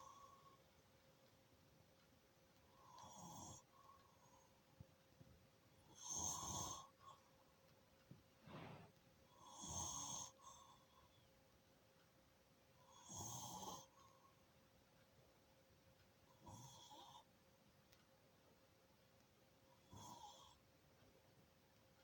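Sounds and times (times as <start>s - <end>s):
person snoring: 6.0s - 6.9s
faint breath: 8.4s - 9.0s.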